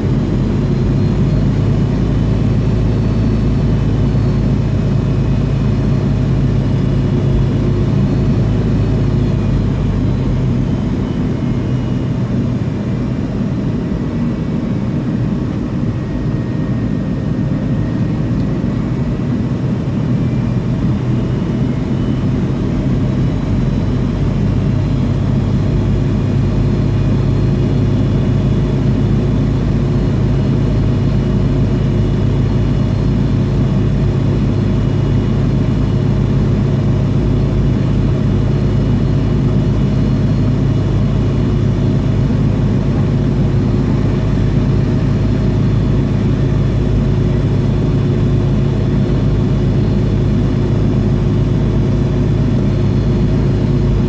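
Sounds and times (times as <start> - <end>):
faint steady whines: 0.0 - 54.0
jet engines humming from cabin: 0.0 - 54.0.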